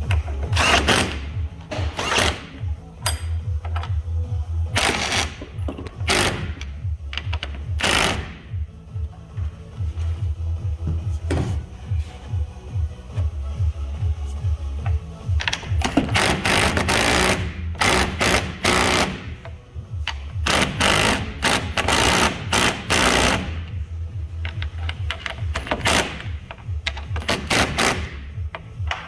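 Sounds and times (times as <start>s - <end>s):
background music with low beat: 0.0s - 29.0s
power tool running: 20.5s - 23.6s.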